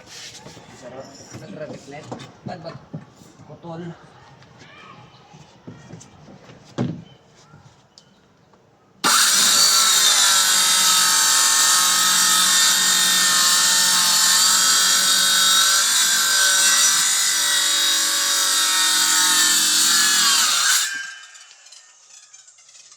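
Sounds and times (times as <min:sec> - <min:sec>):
circular saw cutting plywood: 0:09.0 - 0:22.9.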